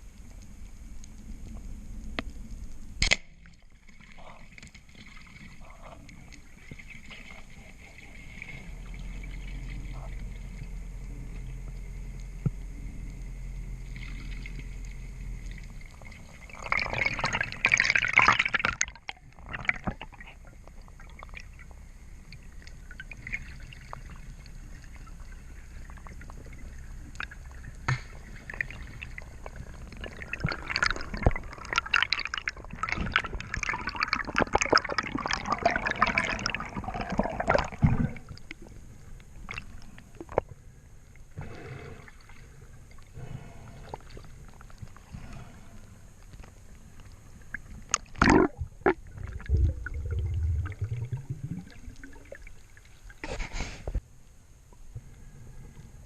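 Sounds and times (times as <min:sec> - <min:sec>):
underwater clicks: 0:00.2 - 0:03.7
rushing bubbling water: 0:13.9 - 0:40.5, 0:47.5 - 0:53.2.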